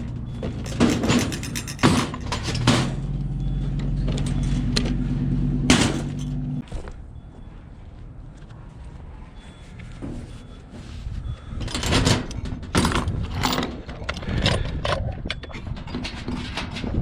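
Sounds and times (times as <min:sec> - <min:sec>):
metal objects clanking: 0:00.0 - 0:03.2, 0:05.6 - 0:06.6.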